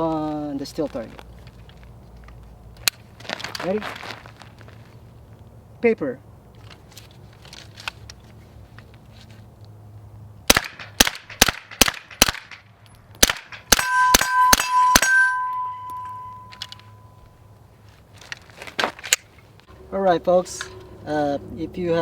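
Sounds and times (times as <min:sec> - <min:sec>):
bullets clanging on steel target: 0:13.4 - 0:17.2.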